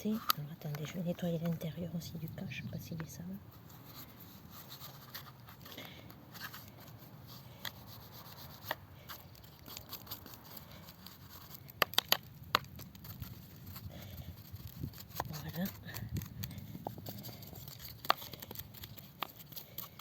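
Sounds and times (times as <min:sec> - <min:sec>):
paintbrush scrubbing: 0:03.5 - 0:11.8, 0:13.0 - 0:20.0.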